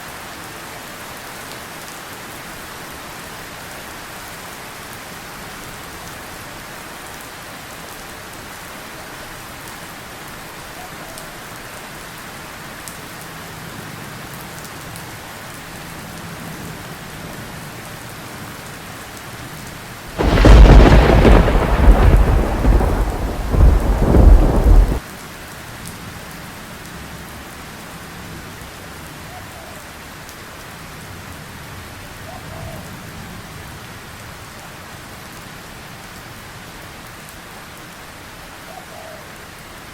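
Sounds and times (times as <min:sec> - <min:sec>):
steady rain falling: 0:00.0 - 0:39.9
loud close thunderclap: 0:20.2 - 0:25.0.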